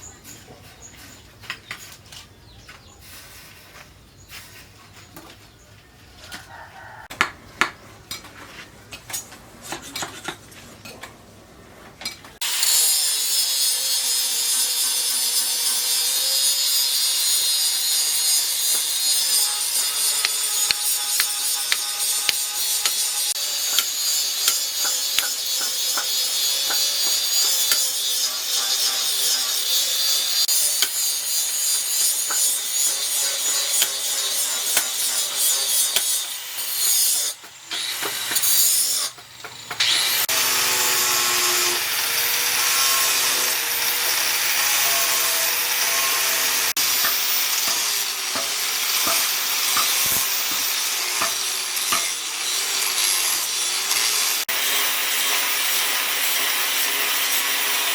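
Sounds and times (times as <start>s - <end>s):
motor-driven tool on wood: 12.4s - 57.9s
tools scraping wood: 18.0s - 29.6s, 30.4s - 40.3s, 46.7s - 52.2s.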